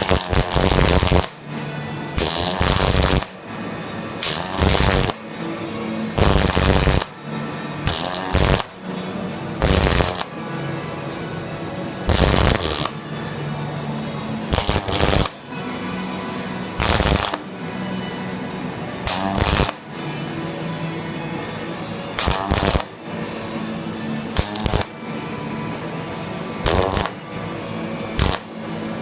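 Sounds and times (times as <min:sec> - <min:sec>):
welder arc crackling: 0:00.0 - 0:01.4, 0:02.2 - 0:03.4, 0:04.2 - 0:05.2, 0:06.2 - 0:07.1, 0:07.9 - 0:08.8, 0:09.6 - 0:10.3, 0:12.1 - 0:13.0, 0:14.5 - 0:15.4, 0:16.8 - 0:17.4, 0:19.1 - 0:19.8, 0:22.2 - 0:22.9, 0:24.3 - 0:25.0, 0:26.6 - 0:27.2, 0:28.2 - 0:28.5.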